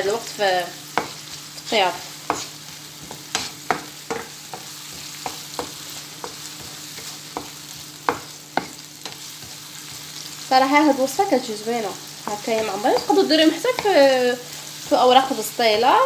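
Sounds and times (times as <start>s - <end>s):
onion sizzling in oil: 0.0s - 16.0s
utensil scraping a pan: 2.3s - 5.4s.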